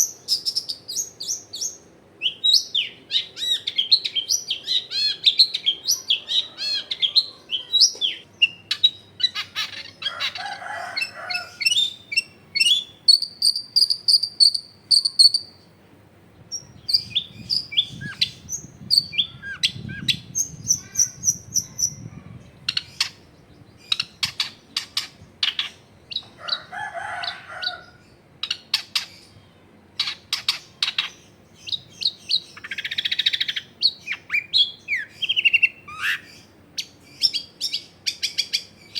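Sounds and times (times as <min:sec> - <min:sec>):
bird singing warbled trills: 0:11.4 - 0:15.7, 0:16.4 - 0:26.3, 0:28.4 - 0:38.9.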